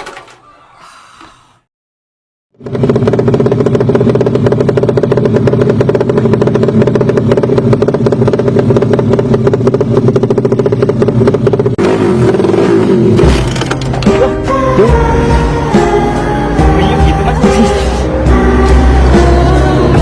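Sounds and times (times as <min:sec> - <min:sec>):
rough engine sound: 0:02.5 - 0:20.0
motorcycle engine at high revs: 0:02.6 - 0:14.3.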